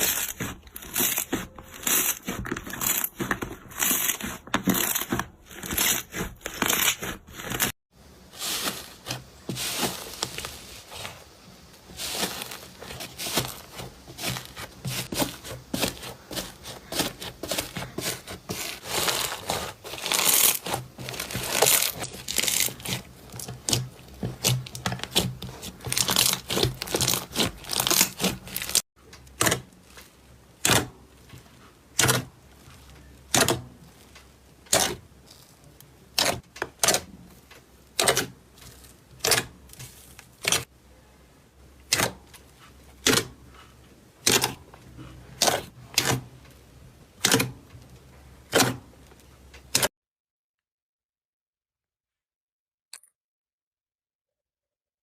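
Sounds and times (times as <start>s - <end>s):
slime crackling and popping: 0.0s - 7.7s, 17.0s - 28.8s.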